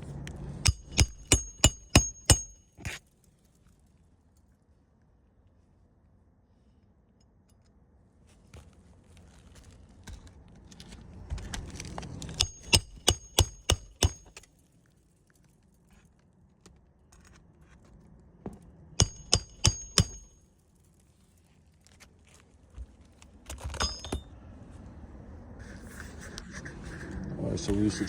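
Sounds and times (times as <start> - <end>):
ringing hammer blows: 0.6 - 2.6, 12.4 - 14.3, 19.0 - 20.4.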